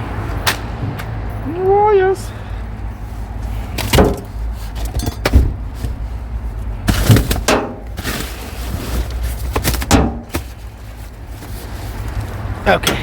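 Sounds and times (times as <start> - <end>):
clunks and knocks of junk: 3.7 - 6.1, 6.7 - 11.6, 12.7 - 13.0.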